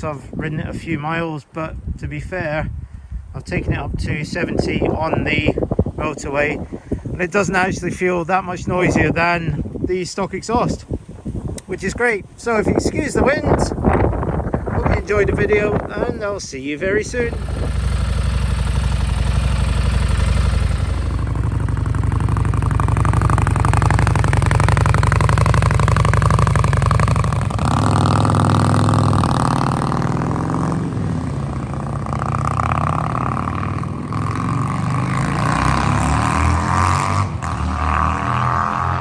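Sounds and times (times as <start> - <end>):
motorcycle engine revving: 14.0 - 39.0.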